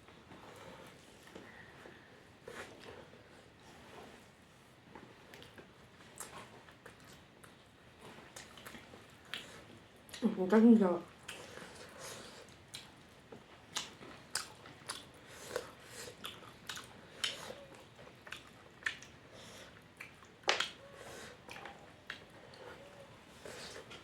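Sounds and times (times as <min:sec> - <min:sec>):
person chewing: 0:11.2 - 0:13.1, 0:13.7 - 0:22.8.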